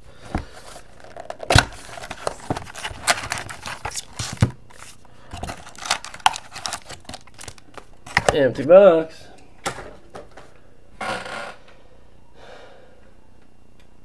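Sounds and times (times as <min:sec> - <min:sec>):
cards and wrappers crinkling: 0:00.5 - 0:08.7.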